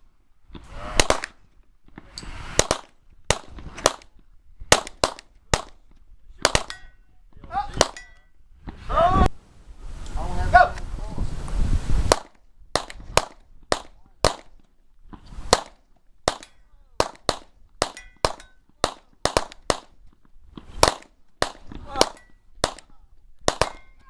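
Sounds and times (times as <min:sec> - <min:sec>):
rifle gunshots: 0:00.9 - 0:01.4, 0:02.5 - 0:04.1, 0:04.7 - 0:05.8, 0:15.5 - 0:19.9, 0:20.8 - 0:23.8
short metallic ring: 0:08.0 - 0:08.4, 0:18.0 - 0:18.6.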